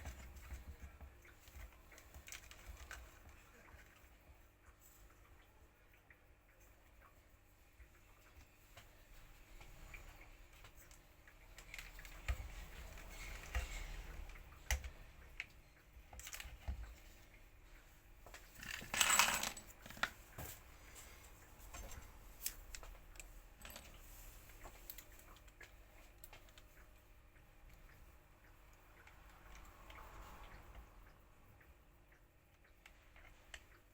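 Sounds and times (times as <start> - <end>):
small parts clicking and clinking: 18.2 - 20.5, 21.7 - 26.8.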